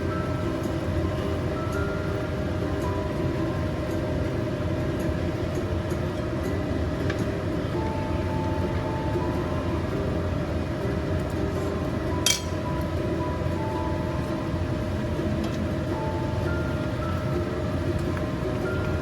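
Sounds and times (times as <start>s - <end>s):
kitchenware clink: 12.2s - 12.6s.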